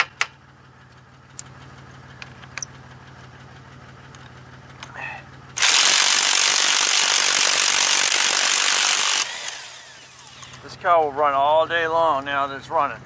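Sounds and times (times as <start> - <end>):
car engine idling: 0.0 - 13.0
electric impact wrench hammering: 5.6 - 10.7.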